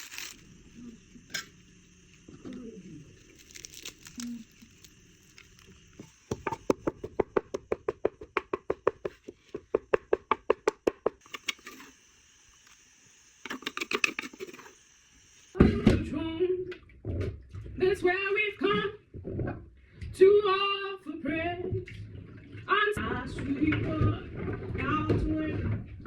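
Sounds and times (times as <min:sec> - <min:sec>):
light crinkling of packaging: 0:00.0 - 0:06.2.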